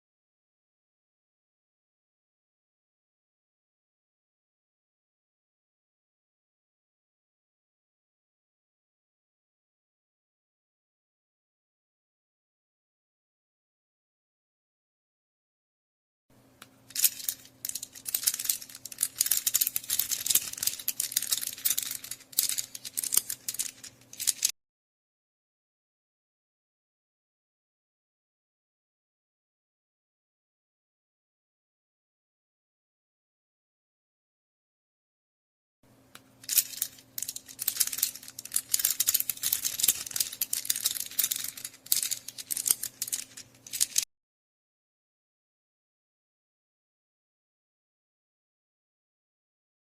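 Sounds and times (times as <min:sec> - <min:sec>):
abacus beads clicking: 0:16.9 - 0:24.5, 0:36.4 - 0:44.1.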